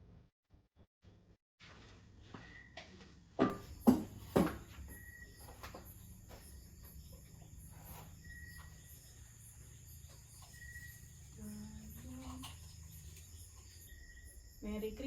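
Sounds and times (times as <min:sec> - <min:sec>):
faint insect chirps: 0:03.6 - 0:15.0.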